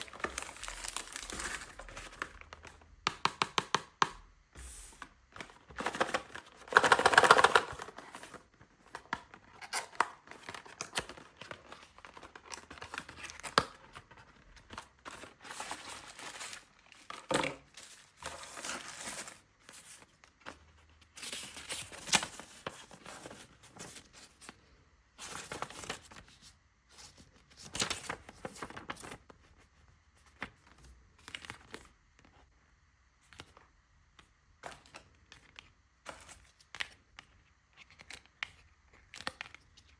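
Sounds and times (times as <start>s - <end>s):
packaging tearing: 0.0s - 1.9s
wrapping rustling and crinkling: 0.0s - 2.7s.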